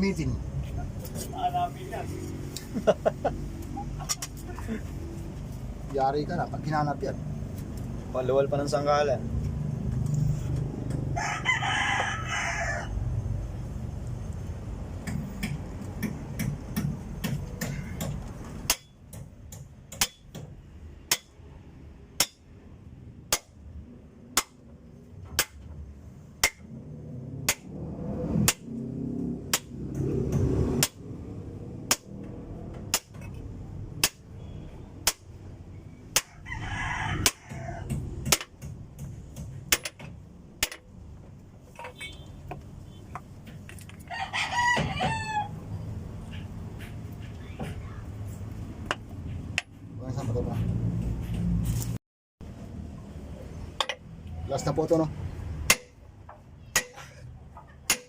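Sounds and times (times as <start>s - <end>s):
rooster crowing: 11.1s - 13.1s, 36.2s - 38.0s, 44.0s - 45.8s.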